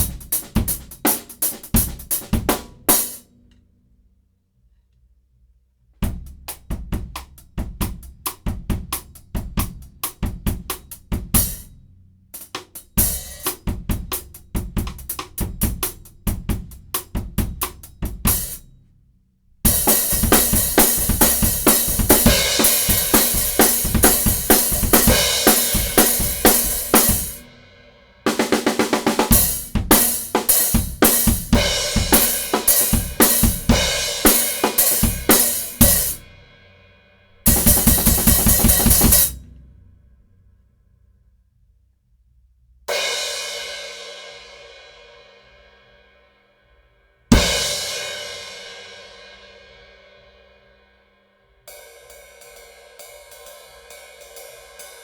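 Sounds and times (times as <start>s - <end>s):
drum kit playing grooves: 0.0s - 3.2s, 6.0s - 11.8s, 12.4s - 18.8s, 19.7s - 27.6s, 28.2s - 36.4s, 37.4s - 39.9s, 47.3s - 48.5s.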